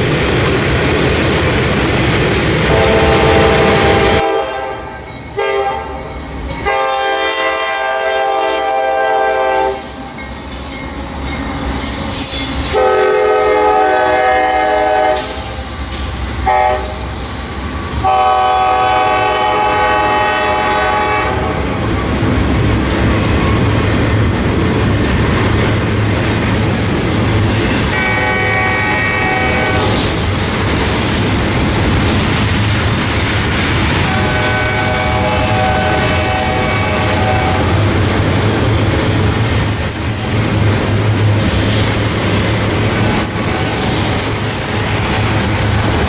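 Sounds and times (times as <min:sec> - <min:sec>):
passing train rumble and clatter: 0:00.0 - 0:46.0
locomotive air horn blasts: 0:02.7 - 0:05.9, 0:06.6 - 0:09.9, 0:12.6 - 0:15.7, 0:16.4 - 0:17.0, 0:18.0 - 0:21.6, 0:27.9 - 0:30.0, 0:34.0 - 0:37.7.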